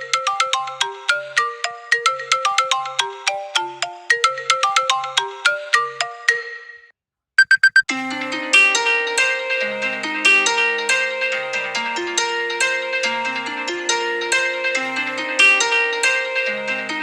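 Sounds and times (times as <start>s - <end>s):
marimba ringtone melody: 0.0s - 7.8s
quick beeps: 7.4s - 7.9s.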